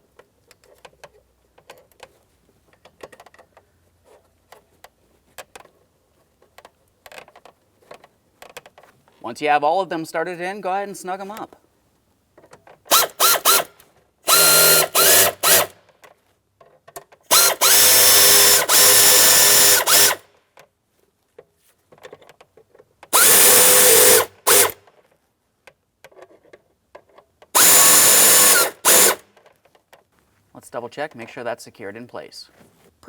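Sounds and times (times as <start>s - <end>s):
cordless drill whining: 12.9s - 15.8s, 17.3s - 20.2s, 23.1s - 24.8s, 27.6s - 29.2s.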